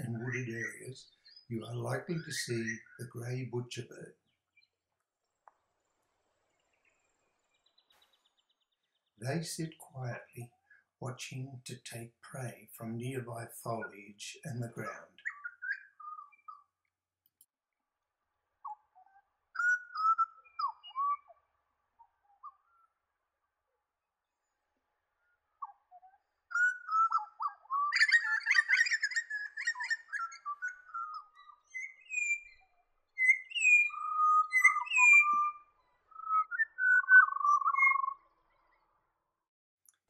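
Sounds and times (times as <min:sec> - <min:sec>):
bird singing piping whistles: 0:14.8 - 0:16.7, 0:18.7 - 0:21.4, 0:26.5 - 0:38.2.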